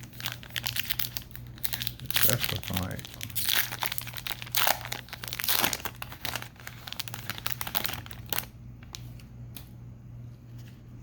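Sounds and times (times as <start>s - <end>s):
card pack wrapper tearing: 0.0s - 9.0s.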